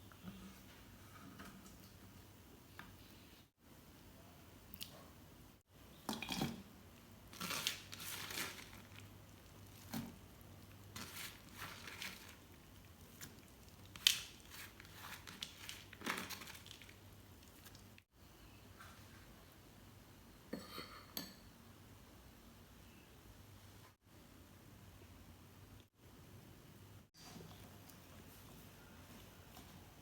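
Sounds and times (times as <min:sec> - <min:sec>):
food crunching and scraping: 0:07.3 - 0:18.0.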